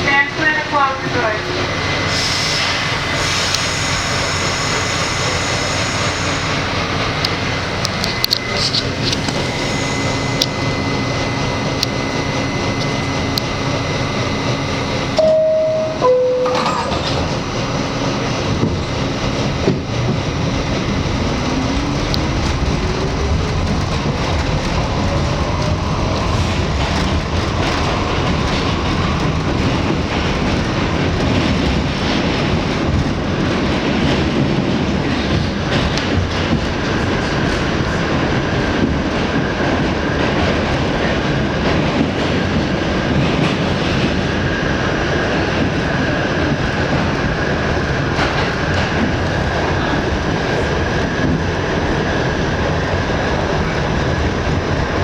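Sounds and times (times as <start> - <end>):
wheels rumbling on rails: 0.0 - 55.0
train motors whining: 0.4 - 33.7
two-note door chime: 15.2 - 17.2.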